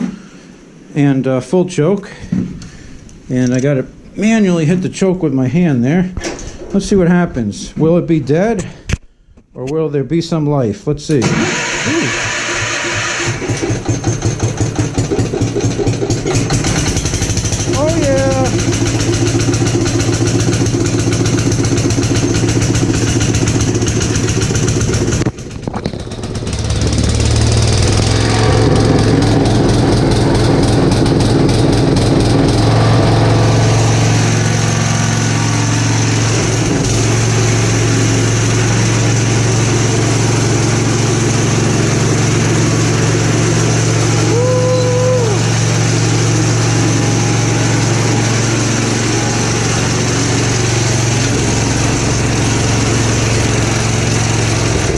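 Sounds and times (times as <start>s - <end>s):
tractor engine running: 11.2s - 54.9s.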